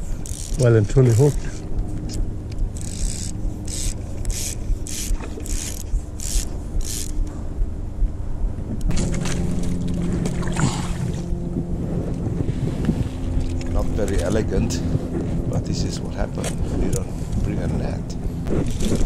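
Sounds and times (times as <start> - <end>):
fishing line rasping through guides: 0.0 - 7.3
steady low hum: 0.0 - 19.0.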